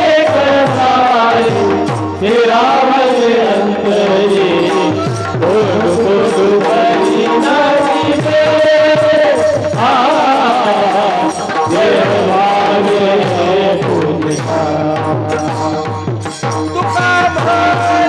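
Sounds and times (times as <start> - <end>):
drum strokes and percussion: 0.0 - 18.0
person singing devotional song: 0.0 - 18.0.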